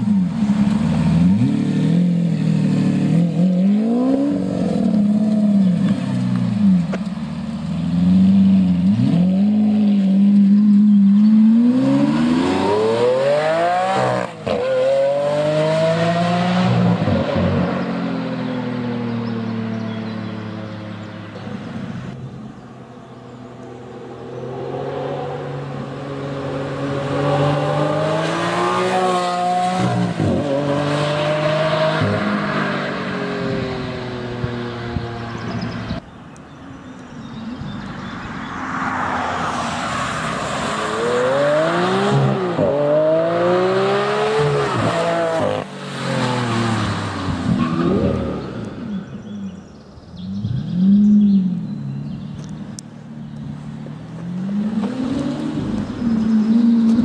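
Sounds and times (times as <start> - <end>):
car engine accelerating hard: 23.6 - 36.0.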